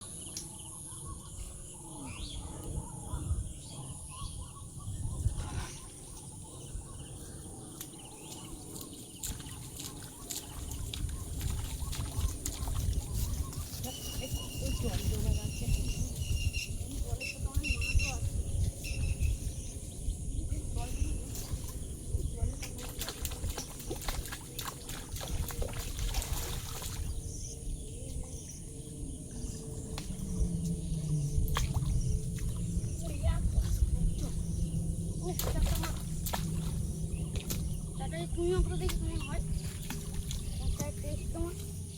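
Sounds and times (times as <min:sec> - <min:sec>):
steady low rumble: 0:00.0 - 0:41.9
uneven low rumble: 0:24.8 - 0:41.9.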